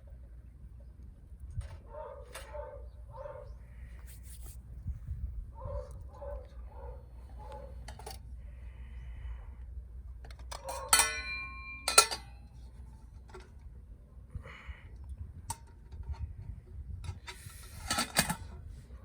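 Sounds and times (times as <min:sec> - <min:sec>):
wind rumble on microphone: 0:01.1 - 0:10.2, 0:13.5 - 0:19.0
metal cookware clinking: 0:10.5 - 0:12.4.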